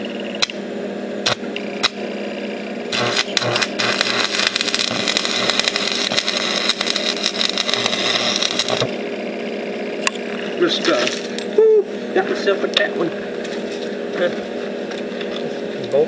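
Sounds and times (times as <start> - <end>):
steady hum: 0.0 - 16.0
sharp clicks: 1.2 - 2.0, 2.9 - 9.0
welding arc crackling and sizzling: 1.2 - 11.6.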